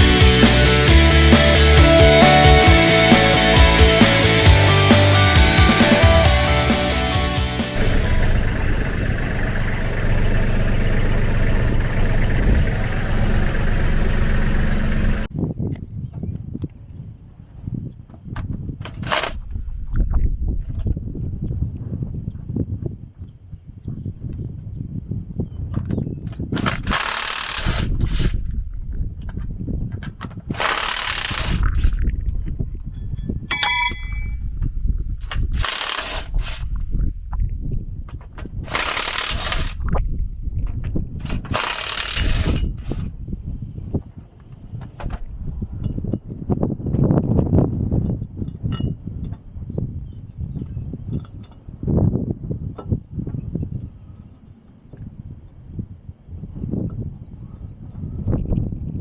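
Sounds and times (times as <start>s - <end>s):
engine idling with low rumble: 6.1s - 15.3s
metallic clink: 33.5s - 34.5s.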